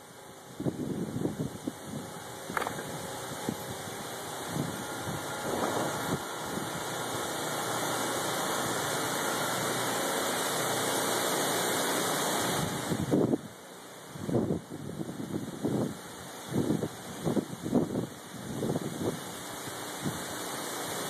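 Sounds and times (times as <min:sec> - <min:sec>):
wind blowing through trees: 0:00.0 - 0:21.0
wind buffeting microphone: 0:00.5 - 0:08.0, 0:12.6 - 0:13.6.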